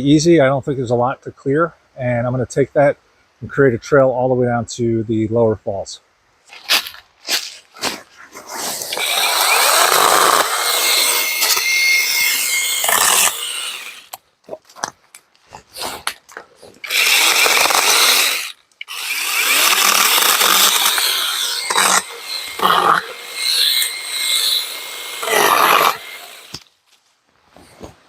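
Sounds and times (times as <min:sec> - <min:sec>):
mini chainsaw cutting brush: 0:06.5 - 0:14.1, 0:16.8 - 0:26.6.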